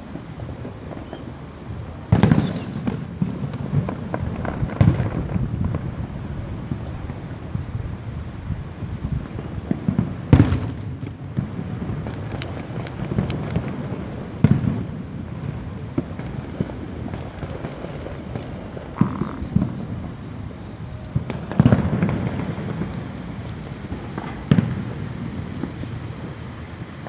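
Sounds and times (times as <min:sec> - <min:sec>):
firework pops and crackles: 0:00.0 - 0:07.6, 0:08.8 - 0:27.0
firework shell bursts: 0:02.1 - 0:05.4.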